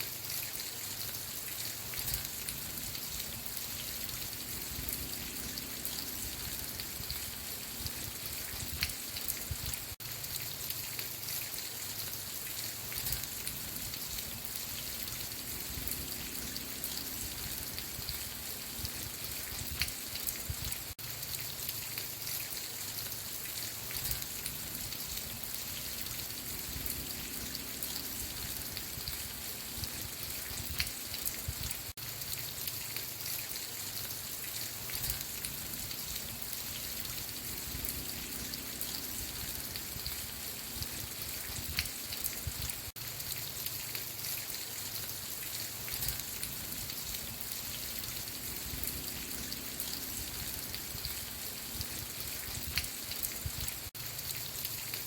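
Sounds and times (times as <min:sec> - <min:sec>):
rain pattering: 0:00.0 - 0:55.0.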